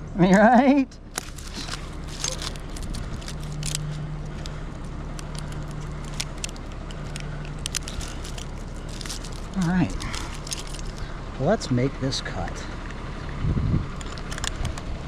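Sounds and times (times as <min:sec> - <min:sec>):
engine running at low speed: 0:00.0 - 0:15.0
light clicks and rustles: 0:01.1 - 0:11.2, 0:14.0 - 0:15.0.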